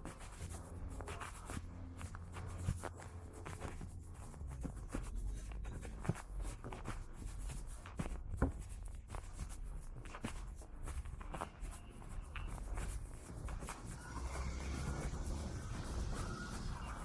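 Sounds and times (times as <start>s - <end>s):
low rumble: 12.3s - 17.0s.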